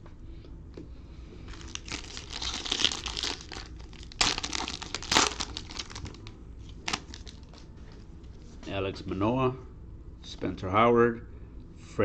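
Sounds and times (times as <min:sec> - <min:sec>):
foil wrapper tearing and crinkling: 0:01.5 - 0:07.6.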